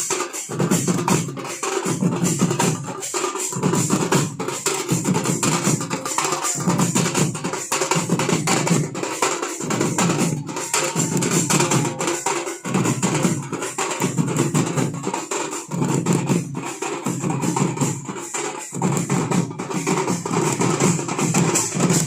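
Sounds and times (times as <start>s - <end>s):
drum band playing fast rhythm: 0.0s - 22.0s.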